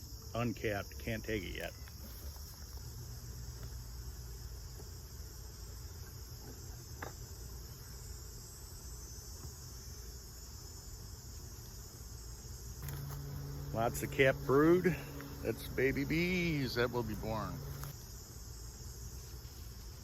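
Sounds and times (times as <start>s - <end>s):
insects chirring: 0.0s - 20.0s.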